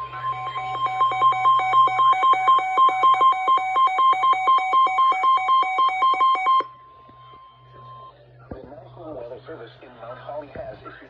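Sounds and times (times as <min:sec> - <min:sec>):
two-pitch rapid beeping: 0:00.0 - 0:06.7
steady high tone: 0:00.0 - 0:08.1.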